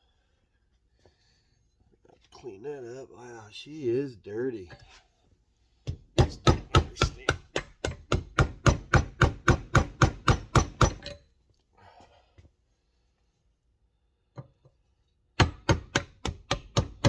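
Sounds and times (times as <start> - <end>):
hammer tapping on wooden dowel: 5.9 - 11.1, 15.4 - 17.0.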